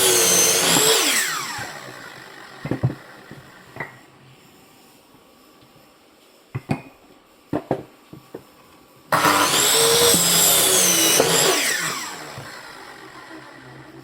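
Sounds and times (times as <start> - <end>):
electric saw cutting firewood: 0.0 - 3.9, 9.1 - 14.0.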